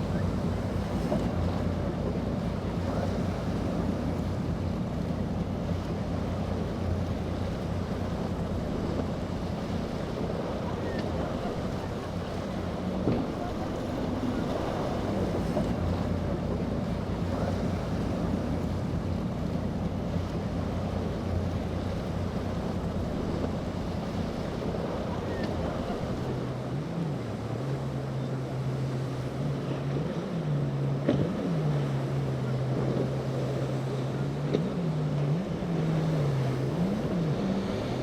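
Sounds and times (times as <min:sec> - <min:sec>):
wind buffeting microphone: 0:00.0 - 0:27.4
motorboat engines running: 0:00.0 - 0:38.0
waves washing: 0:00.0 - 0:38.0.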